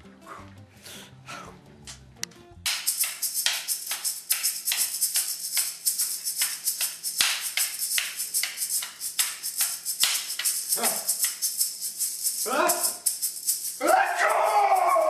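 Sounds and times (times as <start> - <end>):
shaker rattling: 2.7 - 15.0.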